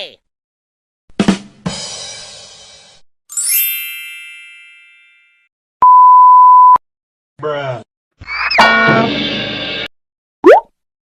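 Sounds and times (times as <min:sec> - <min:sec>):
loud single-pitch beep: 0:05.8 - 0:06.8.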